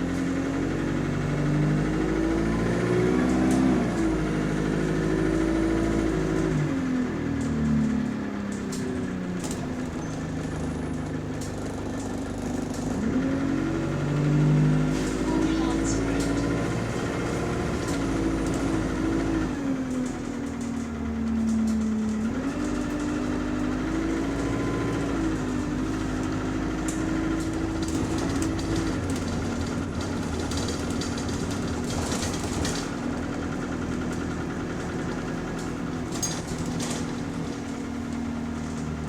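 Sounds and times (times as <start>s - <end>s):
bus engine whining: 0.0s - 39.0s
light rattles: 26.8s - 39.0s.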